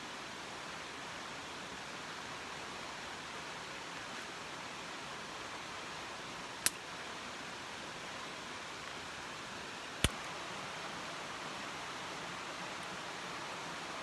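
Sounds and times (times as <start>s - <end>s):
steady hiss: 0.0s - 14.0s.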